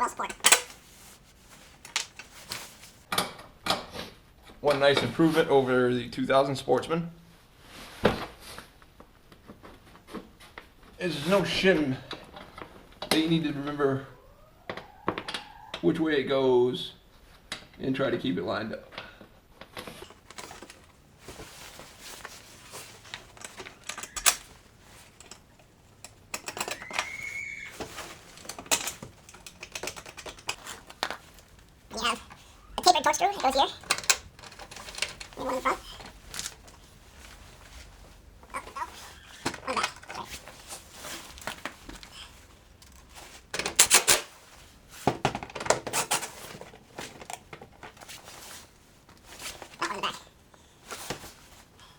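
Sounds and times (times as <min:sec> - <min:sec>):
hand tools clattering: 0:00.0 - 0:03.0, 0:20.0 - 0:42.1, 0:45.3 - 0:48.6
parts knocking and rattling: 0:00.0 - 0:03.1, 0:20.0 - 0:44.4, 0:45.0 - 0:49.8
plastic panels being handled: 0:00.0 - 0:03.1, 0:20.0 - 0:49.8
brief rising squeak: 0:26.8 - 0:27.8.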